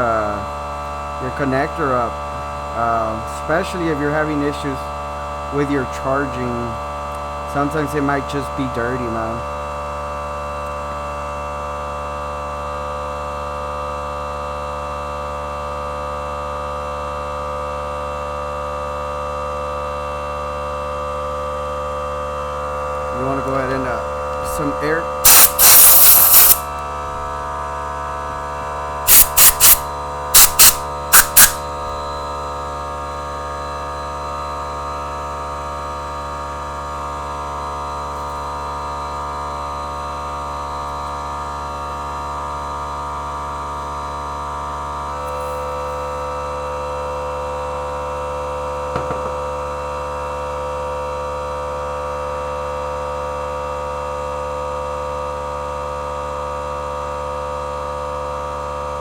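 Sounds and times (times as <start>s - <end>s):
steady electrical hum: 22.7s - 32.5s
compressed air puffs: 25.2s - 26.7s, 29.1s - 29.8s, 30.4s - 31.6s.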